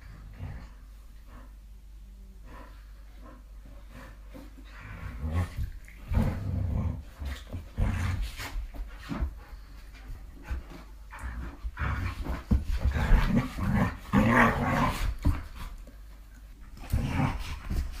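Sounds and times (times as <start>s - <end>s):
dog growling: 12.8s - 15.3s.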